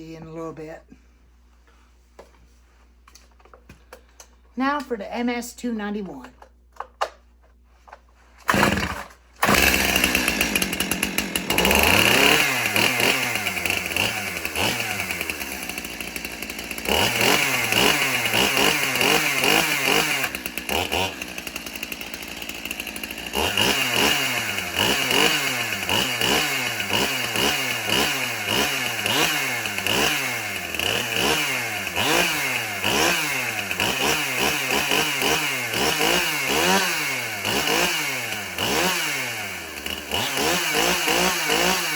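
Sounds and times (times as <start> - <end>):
chainsaw revving: 8.4 - 41.9.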